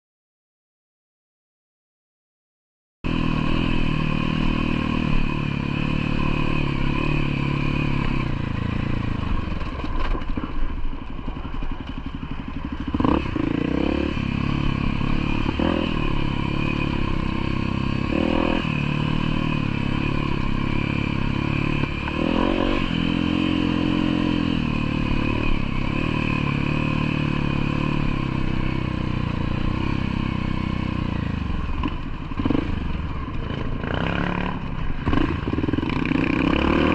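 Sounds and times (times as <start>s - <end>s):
motorcycle engine revving: 3.1s - 36.9s
rattling over rough ground: 8.7s - 12.7s.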